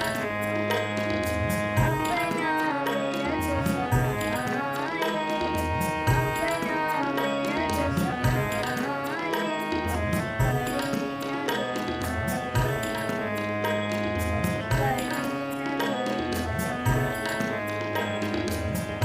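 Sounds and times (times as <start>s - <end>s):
sustained melody: 0.0s - 19.0s
tabla playing a steady rhythm: 0.0s - 19.0s.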